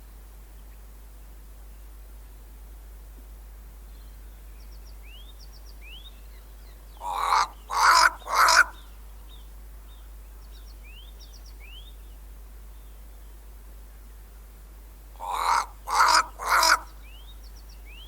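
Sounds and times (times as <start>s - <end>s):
crow cawing: 7.0s - 8.8s, 15.2s - 16.9s.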